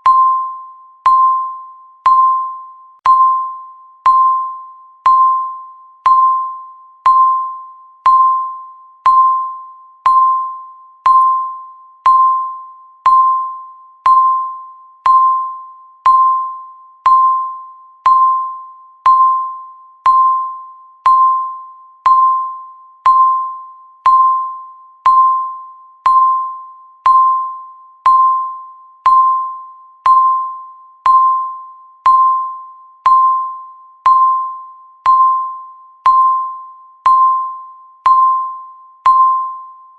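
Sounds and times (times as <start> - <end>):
electronic timer ticking: 0.0 - 39.6.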